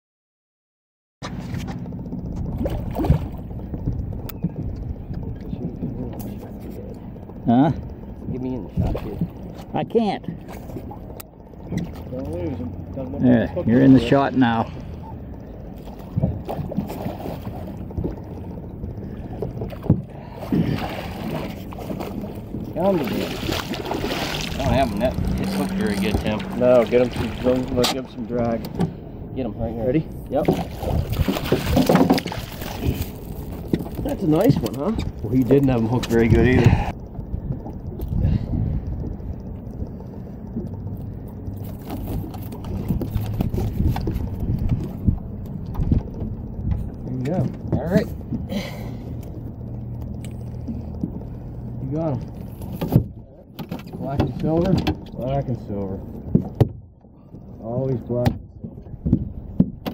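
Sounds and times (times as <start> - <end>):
boat engine humming: 1.2 - 59.9
wind and water rumbling: 1.2 - 59.9
sharp knocks on boat: 30.4 - 32.4, 56.2 - 56.9, 58.2 - 59.9.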